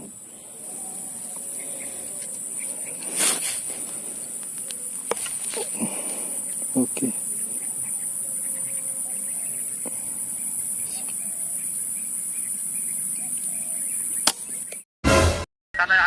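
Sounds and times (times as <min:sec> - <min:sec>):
insects droning: 0:00.0 - 0:14.9
sharp click: 0:14.2 - 0:14.8.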